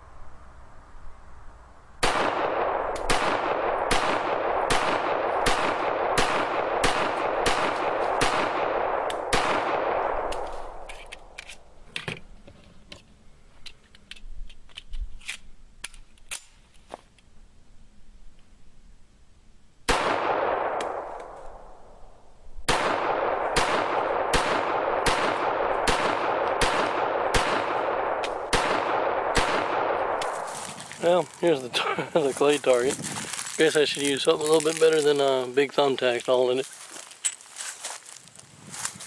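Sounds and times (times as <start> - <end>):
pistol shots with echo: 2.0 - 10.4, 19.9 - 21.1, 22.7 - 30.4.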